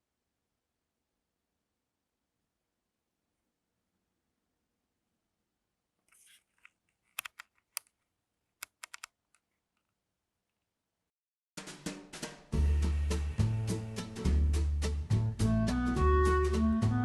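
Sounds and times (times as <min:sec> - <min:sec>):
soft rustle: 0:06.0 - 0:07.2.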